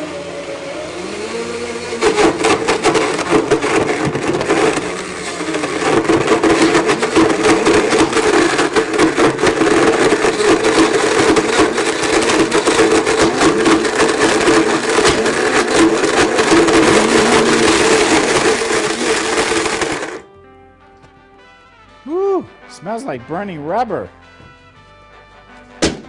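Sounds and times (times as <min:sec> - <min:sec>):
blender motor hum: 0:00.0 - 0:20.2
chunks clattering in blender jar: 0:02.0 - 0:20.2.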